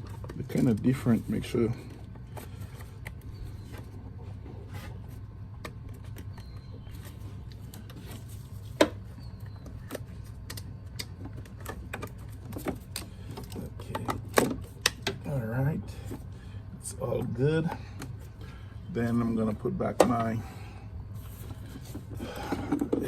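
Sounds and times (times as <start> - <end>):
steady low hum: 0.0 - 23.0
clicks and knocks of car parts: 9.6 - 15.3, 22.4 - 23.0.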